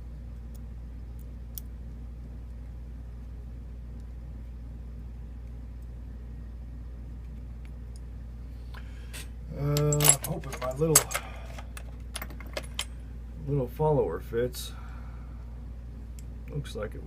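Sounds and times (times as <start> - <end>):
low background hum: 0.0 - 17.0
light clicks of metal lock parts: 9.8 - 12.9.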